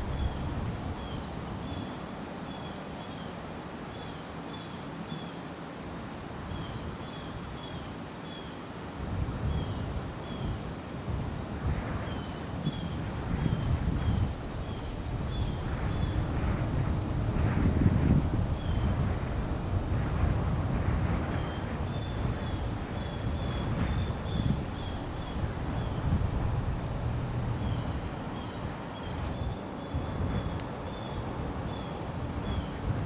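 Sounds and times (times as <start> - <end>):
wind on microphone: 0.0 - 2.6, 8.9 - 33.0.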